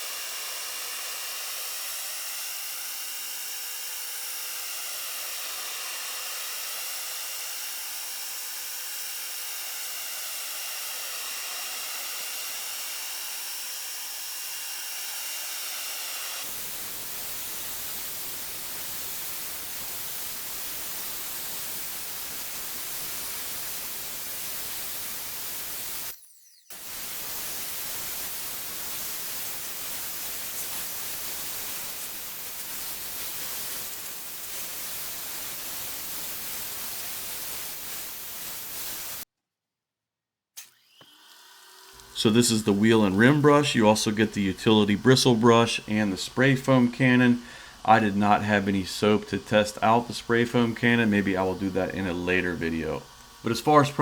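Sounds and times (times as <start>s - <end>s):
motor whine: 0.0s - 35.1s
pressure washer water jet hiss: 14.8s - 39.2s, 42.0s - 54.0s.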